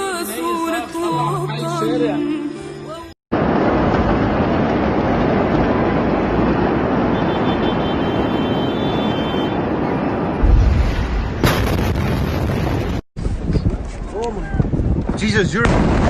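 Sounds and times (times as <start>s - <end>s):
explosion roar: 3.3s - 7.5s, 9.6s - 13.0s
low boom: 9.8s - 13.7s.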